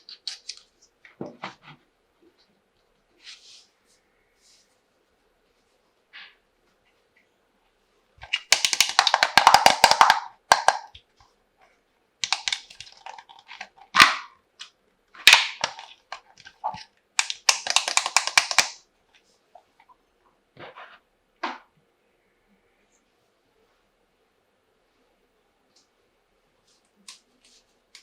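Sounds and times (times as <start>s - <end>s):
plastic toys rattling and clattering: 8.2s - 10.9s, 12.2s - 14.3s, 15.2s - 18.8s.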